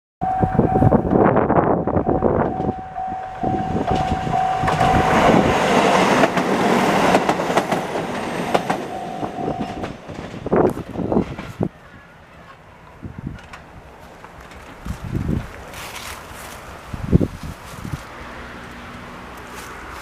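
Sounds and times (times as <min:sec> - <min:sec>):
level crossing bell ringing: 0:02.5 - 0:05.4, 0:08.8 - 0:10.0
train wheels clacking on rails: 0:02.5 - 0:11.7.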